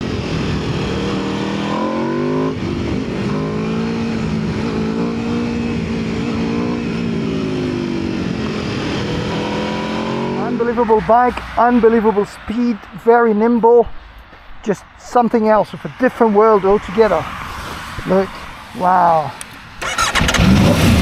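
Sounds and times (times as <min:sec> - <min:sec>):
motorcycle engine accelerating loudly: 0:00.0 - 0:11.4, 0:19.8 - 0:21.0.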